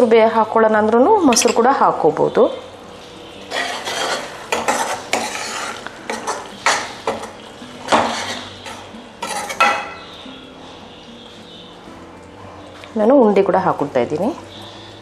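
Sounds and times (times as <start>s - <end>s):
spoon clinking against pan: 1.3s - 1.6s, 3.5s - 10.1s
spoon stirring and scraping a pan: 3.3s - 10.3s.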